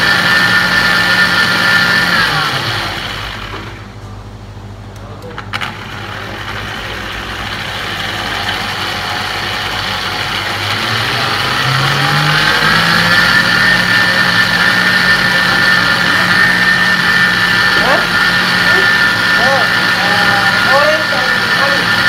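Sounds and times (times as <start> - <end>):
small appliance motor whining: 5.5 - 22.0.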